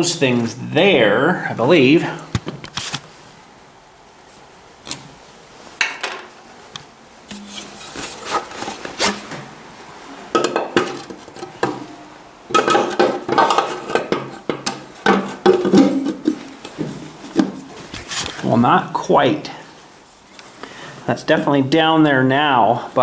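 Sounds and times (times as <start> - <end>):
metal clanking and knocking: 12.5 - 17.8.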